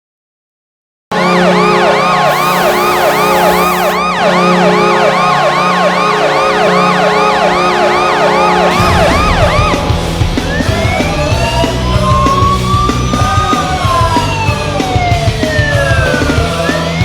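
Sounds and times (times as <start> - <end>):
goal horn low chord: 1.1 - 10.4
siren rising and falling: 1.1 - 17.0.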